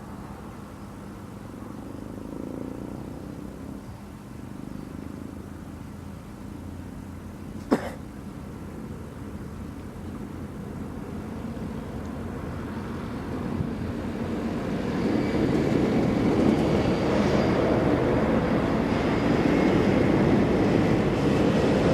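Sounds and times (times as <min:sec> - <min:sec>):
faint steady hum: 0:00.0 - 0:14.8
low rumble of engines: 0:00.0 - 0:21.9.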